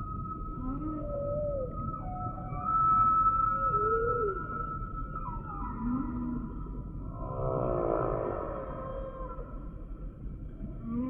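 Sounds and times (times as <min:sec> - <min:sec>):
low rumble: 0:06.9 - 0:11.0.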